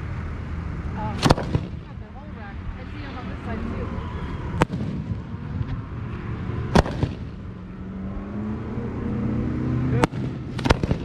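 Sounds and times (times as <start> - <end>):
fireworks shells booming: 1.1 - 2.2, 4.4 - 5.7, 6.7 - 7.6, 10.0 - 11.0.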